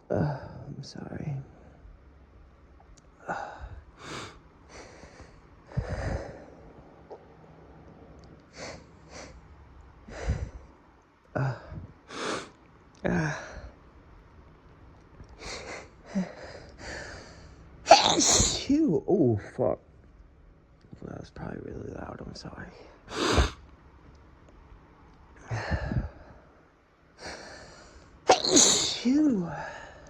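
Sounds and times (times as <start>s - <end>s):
man sniffling: 23.1s - 23.6s, 28.3s - 30.0s.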